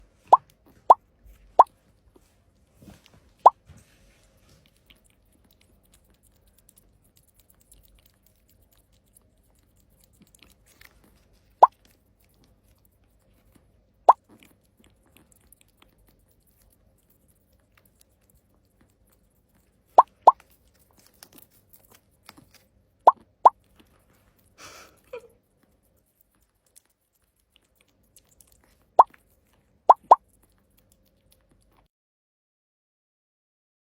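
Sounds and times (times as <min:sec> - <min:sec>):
cartoon bloop pops: 0:29.9 - 0:30.2.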